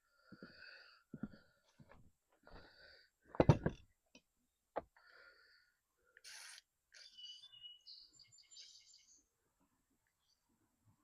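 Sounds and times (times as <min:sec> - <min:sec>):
high bird chirps: 0:06.3 - 0:09.2.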